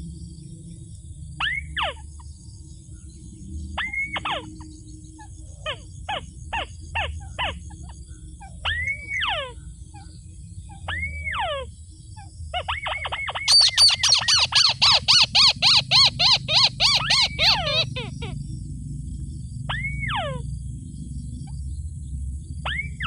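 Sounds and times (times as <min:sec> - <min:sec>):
rail bird calls: 0:01.4 - 0:02.4, 0:03.6 - 0:18.5, 0:19.7 - 0:20.5, 0:22.6 - 0:23.0.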